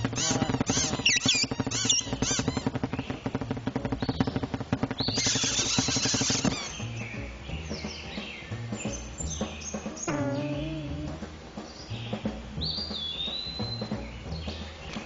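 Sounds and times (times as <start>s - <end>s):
chirping bird-like sound effects: 0.0s - 8.2s, 8.8s - 11.2s
fast rhythmic cartoon music: 0.0s - 15.0s.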